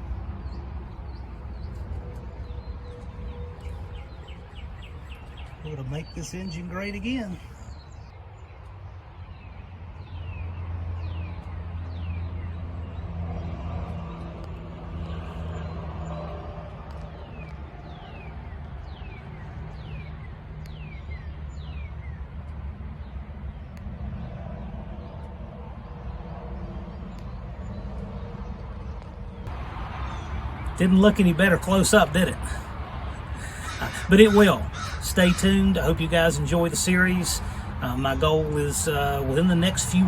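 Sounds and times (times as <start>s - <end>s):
vehicle engine rumble: 0.0s - 8.1s, 10.0s - 21.1s, 21.7s - 40.0s
bird chirping: 0.3s - 8.5s, 25.8s - 40.0s.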